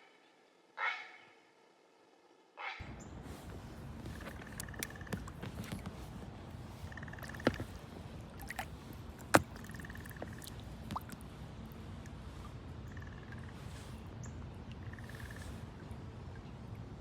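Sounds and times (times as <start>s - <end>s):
water dripping and lapping: 2.8s - 16.9s
sharp knocks on kayak: 3.5s - 6.3s, 7.1s - 11.2s.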